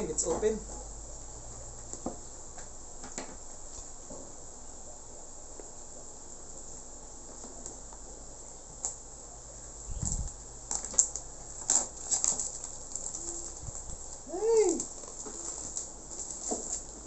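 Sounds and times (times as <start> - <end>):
packaging rustling: 10.0 - 17.0.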